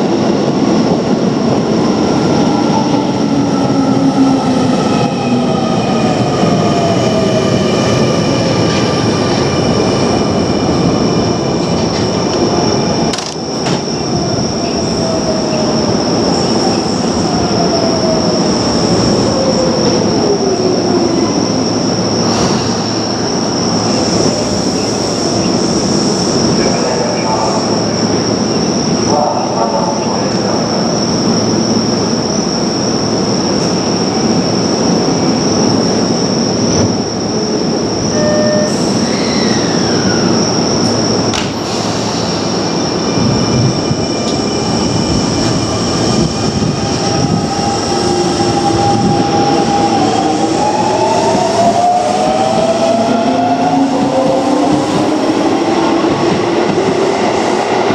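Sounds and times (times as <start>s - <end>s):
train wheels on rails: 0.0s - 19.3s, 21.1s - 28.9s, 38.6s - 57.9s.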